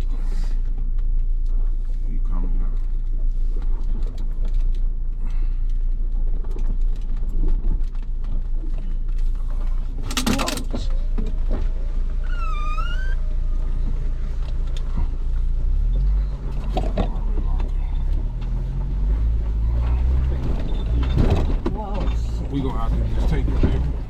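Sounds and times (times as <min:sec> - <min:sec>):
loud rattle: 0:09.9 - 0:10.9.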